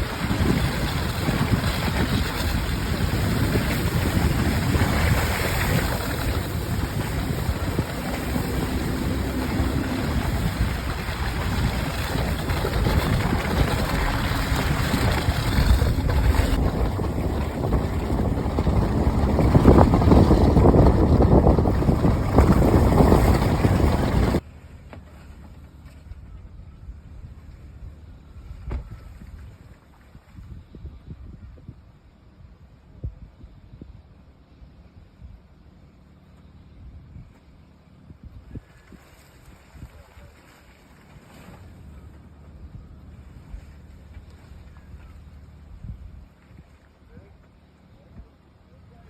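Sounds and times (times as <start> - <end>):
wind on microphone: 0.0 - 24.4, 28.3 - 32.0, 38.1 - 40.4
vehicle engine and road rumble: 0.0 - 49.0.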